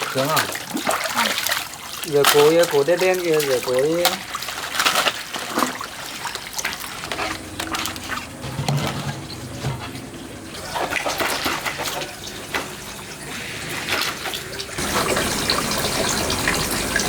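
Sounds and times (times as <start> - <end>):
water splashing and trickling: 0.0 - 17.0
rush of running water: 6.2 - 17.0.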